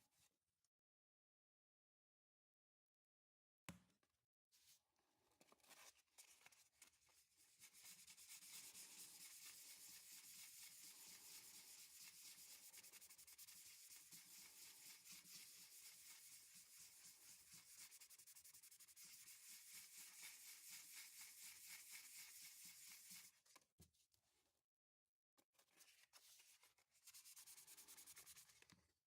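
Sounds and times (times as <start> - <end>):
sandpaper scratching on plastic: 7.8 - 23.3.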